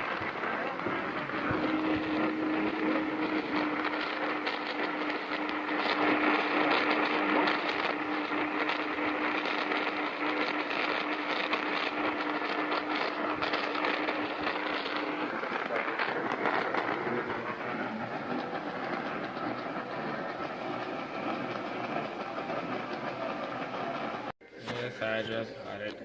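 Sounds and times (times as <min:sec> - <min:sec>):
steady low tone: 0:00.0 - 0:09.3
radio station bleeding in: 0:00.0 - 0:25.3
radio static and hiss: 0:00.0 - 0:26.0.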